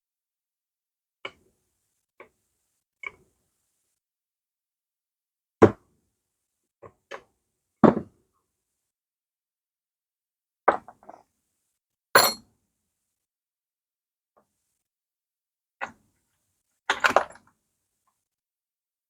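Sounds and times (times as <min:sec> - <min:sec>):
tools knocking and clacking: 0:12.2 - 0:12.4.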